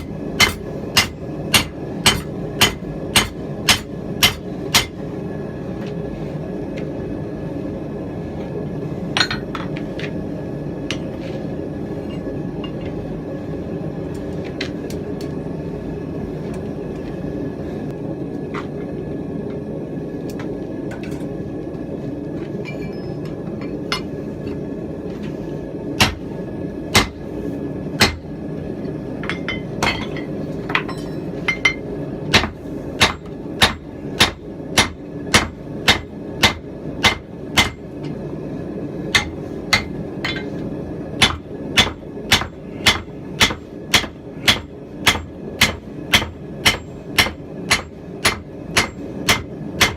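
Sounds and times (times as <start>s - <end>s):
hammer striking hot steel on anvil: 0.0s - 5.0s, 26.0s - 26.3s, 26.9s - 27.2s, 28.0s - 28.3s, 29.2s - 38.2s, 39.1s - 40.6s, 41.2s - 49.9s.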